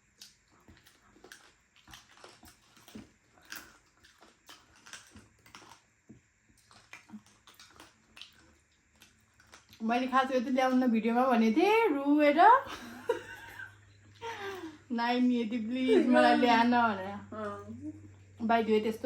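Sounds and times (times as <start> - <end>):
soft chewing: 0.0 - 10.9.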